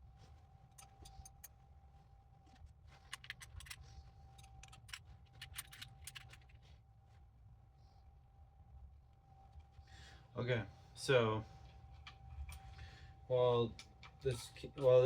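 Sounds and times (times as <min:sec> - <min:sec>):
steady low hum: 0:00.0 - 0:15.0
metal parts clicking and clinking: 0:03.0 - 0:06.6.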